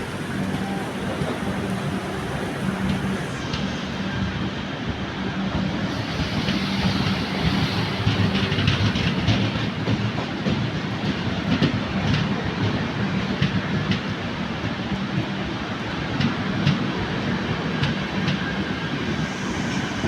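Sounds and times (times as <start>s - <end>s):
train rumble: 0.0s - 20.0s
train wheels clattering: 5.5s - 14.8s.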